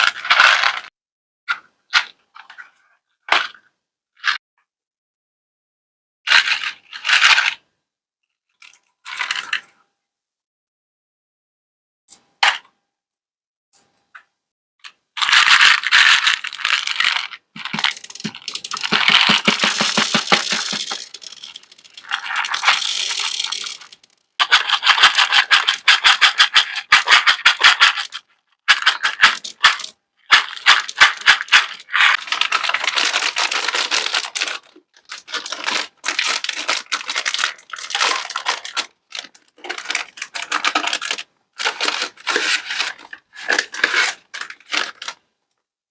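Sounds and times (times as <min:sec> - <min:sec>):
hard sweets rattling: 0:15.2 - 0:45.2.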